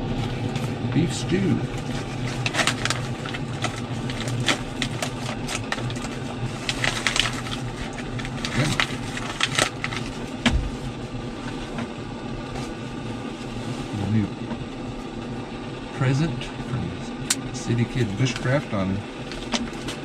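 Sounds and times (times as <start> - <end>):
low steady hum: 0.0 - 20.0
packaging crackling: 1.8 - 10.7, 19.2 - 20.0.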